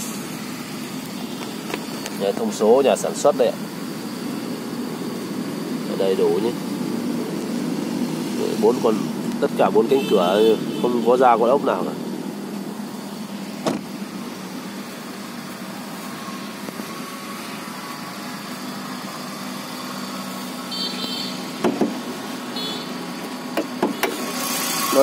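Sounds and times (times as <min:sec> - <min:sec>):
car engine idling: 0:00.0 - 0:25.0
sharp knocks: 0:21.6 - 0:22.0.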